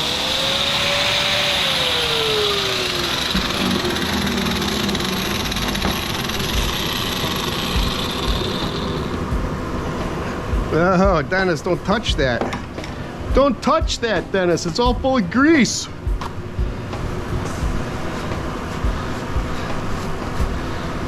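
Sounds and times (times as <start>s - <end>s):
power tool grinding brass: 0.0s - 9.2s.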